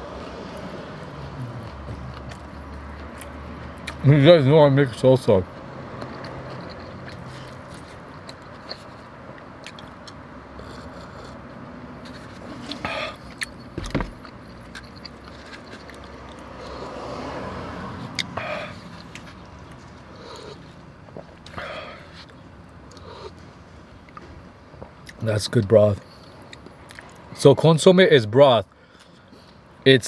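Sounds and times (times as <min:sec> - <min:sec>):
wet eating clicks and smacks: 0:01.4 - 0:04.0, 0:05.9 - 0:11.4
sharp thump: 0:13.8 - 0:14.2.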